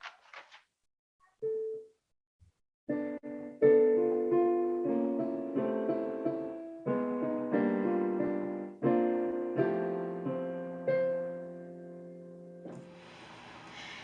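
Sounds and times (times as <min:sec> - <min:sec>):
piano chords ringing: 0:02.9 - 0:13.2.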